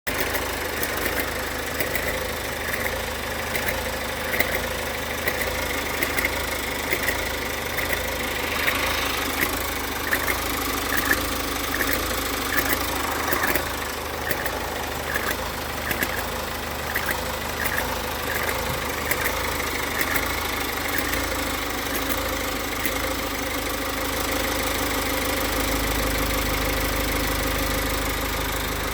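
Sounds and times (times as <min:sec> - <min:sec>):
diesel engine idling: 0:00.0 - 0:28.9
low hum: 0:00.1 - 0:21.3.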